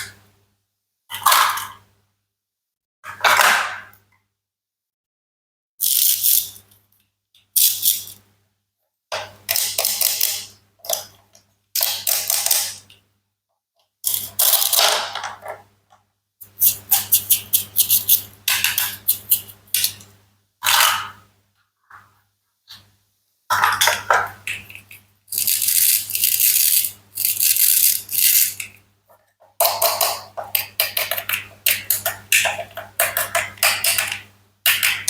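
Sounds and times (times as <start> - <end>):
toy knife cutting toy food: 16.6 - 20.0, 25.3 - 28.7.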